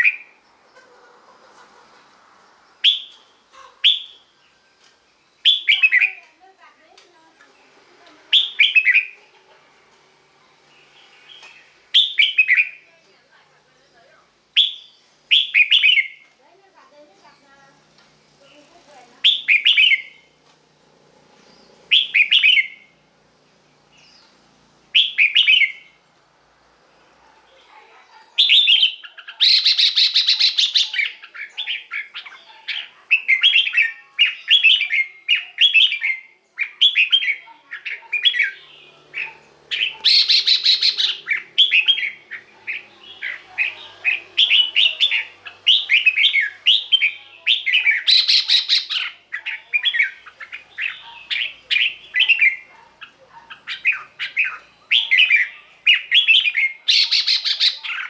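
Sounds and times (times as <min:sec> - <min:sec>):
harsh bird calls: 0:00.0 - 0:06.3, 0:07.6 - 0:09.8, 0:10.5 - 0:13.0, 0:14.4 - 0:16.3, 0:18.5 - 0:20.4, 0:21.4 - 0:23.0, 0:23.9 - 0:26.0, 0:27.0 - 0:58.0
bird whistling bright phrases: 0:05.4 - 0:06.2, 0:08.3 - 0:09.2, 0:11.9 - 0:12.8, 0:14.6 - 0:16.2, 0:19.2 - 0:20.2, 0:21.9 - 0:22.9, 0:39.2 - 0:49.2, 0:53.8 - 0:58.0.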